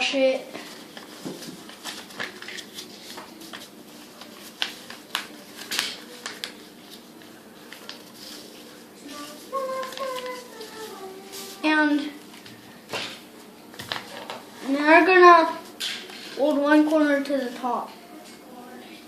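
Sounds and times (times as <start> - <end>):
paper being folded and crinkled: 0.0 - 12.6.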